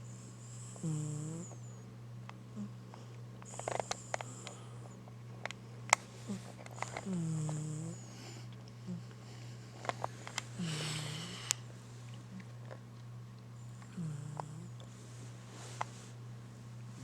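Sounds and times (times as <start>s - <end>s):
steady low hum: 0.0s - 17.0s
cat snoring: 0.1s - 1.8s, 6.3s - 9.1s, 10.6s - 11.6s, 13.8s - 14.8s.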